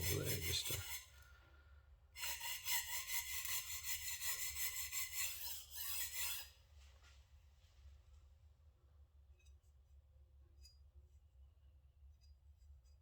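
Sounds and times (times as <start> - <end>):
knife rasping on sharpening stone: 0.0 - 1.1, 2.2 - 6.6.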